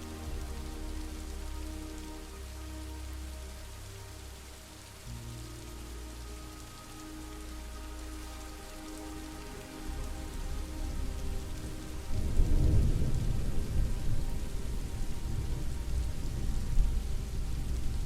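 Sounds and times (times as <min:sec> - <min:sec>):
soft meditation music: 0:00.0 - 0:18.0
steady rain falling: 0:00.0 - 0:18.0
low rumble of thunder: 0:09.2 - 0:18.0.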